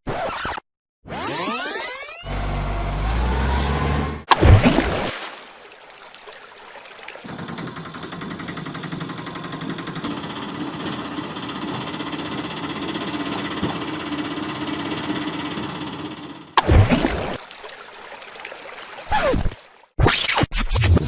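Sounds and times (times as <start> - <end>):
loud knock: 7.3 - 16.7.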